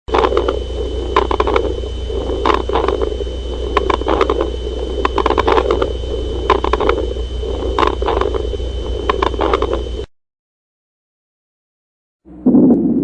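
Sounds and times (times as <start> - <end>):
steady low hum: 0.1 - 10.1.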